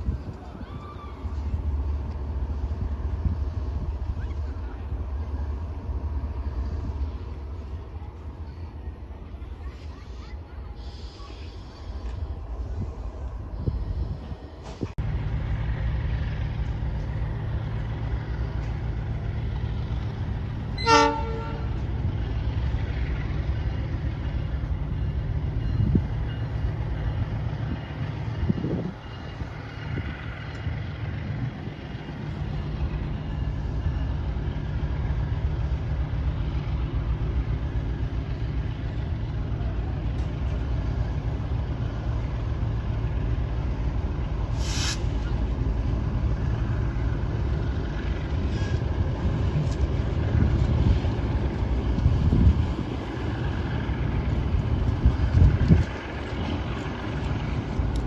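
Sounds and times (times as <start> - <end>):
locomotive engine rumble: 0.0 - 58.0
short train horn toot: 20.8 - 21.8.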